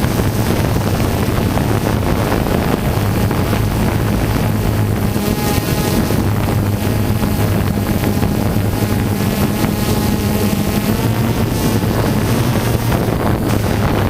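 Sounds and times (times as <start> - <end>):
aircraft engine drone: 0.0 - 14.0
wind buffeting microphone: 0.0 - 14.0.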